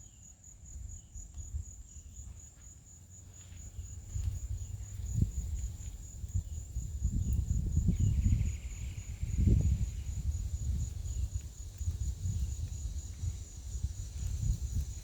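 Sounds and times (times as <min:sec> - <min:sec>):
insects trilling: 0:00.0 - 0:15.0
wind buffeting microphone: 0:03.6 - 0:15.0.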